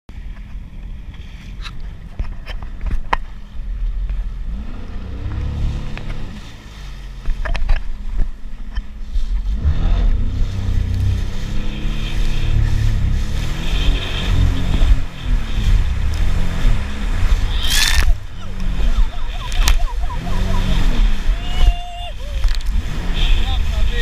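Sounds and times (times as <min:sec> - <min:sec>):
steady low rumble: 0:00.1 - 0:24.0
watercraft engine revving: 0:04.3 - 0:08.2, 0:09.4 - 0:24.0.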